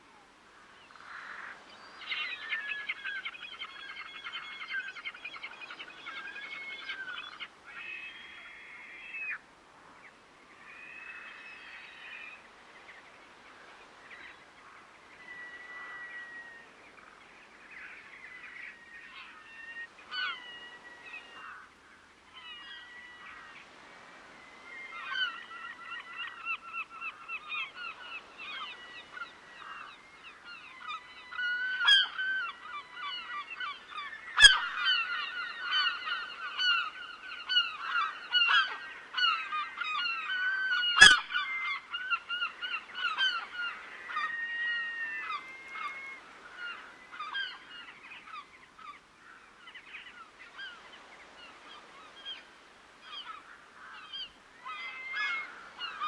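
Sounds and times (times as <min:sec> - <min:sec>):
water birds harsh calls: 0:13.9 - 0:21.8, 0:22.4 - 0:56.0.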